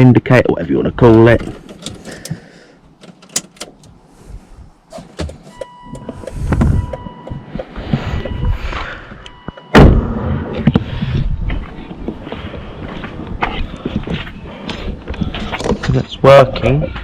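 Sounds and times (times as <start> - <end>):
turn signal clicking: 1.4 - 4.0
faint steady tone: 4.6 - 9.8.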